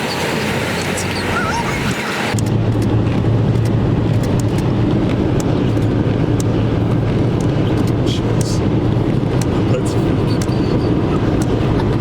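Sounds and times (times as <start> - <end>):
car cabin engine hum: 0.0 - 12.0
tyre and wind noise: 0.0 - 12.0.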